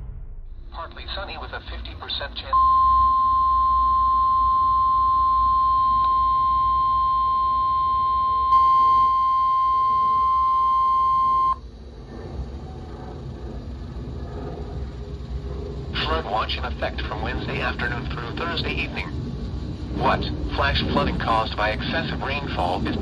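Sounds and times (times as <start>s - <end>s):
high warning alarm tone: 2.5s - 11.7s.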